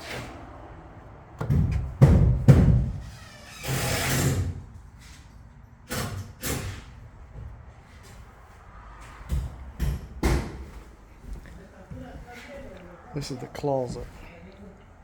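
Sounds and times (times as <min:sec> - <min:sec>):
heavy thumps and knocks: 0:01.4 - 0:03.0.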